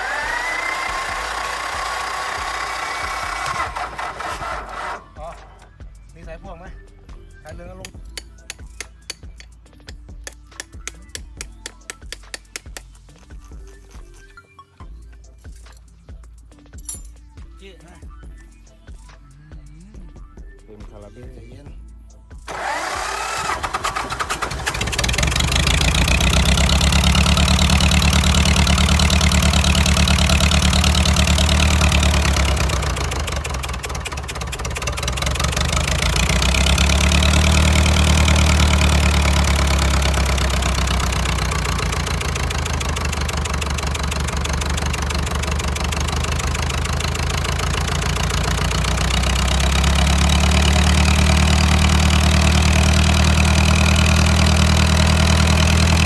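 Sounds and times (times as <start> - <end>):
diesel engine running: 0.0 - 6.0, 22.5 - 56.0.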